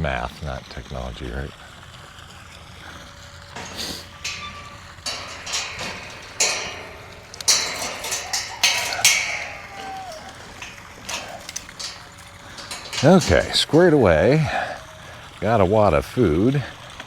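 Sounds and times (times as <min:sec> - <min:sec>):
objects rustling and scraping: 0:03.6 - 0:14.7.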